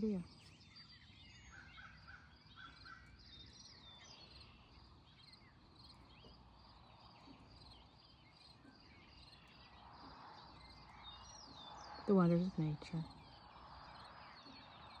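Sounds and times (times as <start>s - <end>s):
songbirds chirping and trilling: 0.0s - 15.0s.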